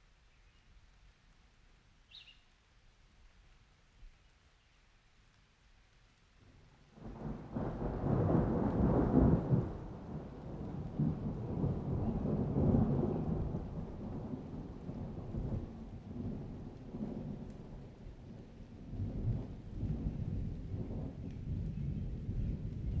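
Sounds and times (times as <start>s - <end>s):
rolling thunder: 7.0s - 23.0s.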